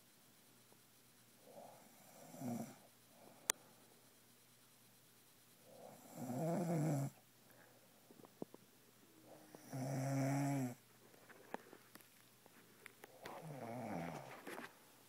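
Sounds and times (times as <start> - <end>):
snores: 1.4 - 2.9, 5.7 - 7.2, 9.2 - 10.8, 13.2 - 14.4.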